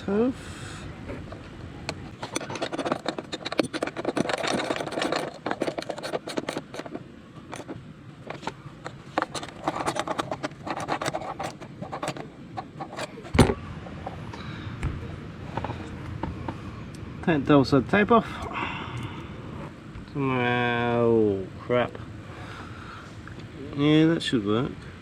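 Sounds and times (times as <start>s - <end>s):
metal tools clicking and scraping: 1.9s - 13.4s.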